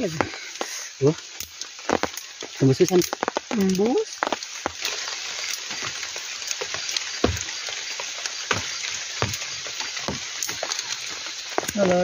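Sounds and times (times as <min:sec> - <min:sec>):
heavy rain on a tent: 0:00.0 - 0:12.0
individual raindrops striking: 0:00.0 - 0:12.0.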